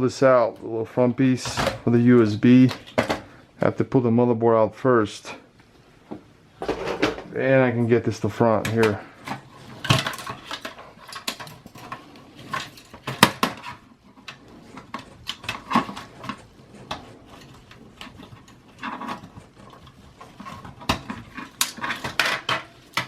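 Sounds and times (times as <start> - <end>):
computer parts clicking and clattering: 8.6 - 23.0.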